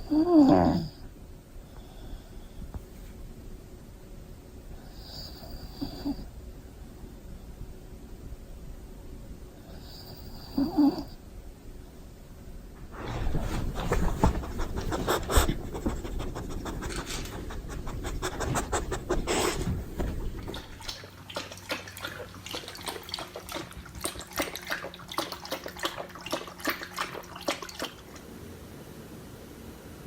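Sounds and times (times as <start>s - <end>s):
dog panting: 12.9s - 28.2s.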